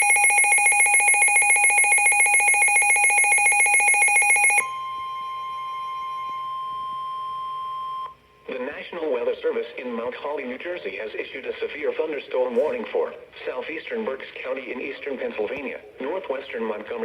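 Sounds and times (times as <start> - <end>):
fast pulsing electronic alert beep: 0.0 - 5.5
steady single-pitched alarm tone: 0.0 - 8.2.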